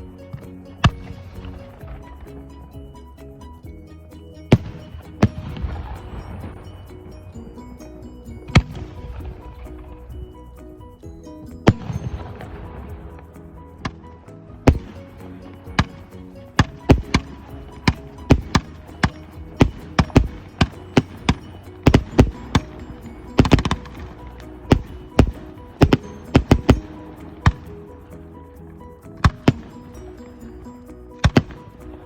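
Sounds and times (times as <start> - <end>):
music playing: 0.0 - 32.0
fireworks bursting: 16.6 - 27.7.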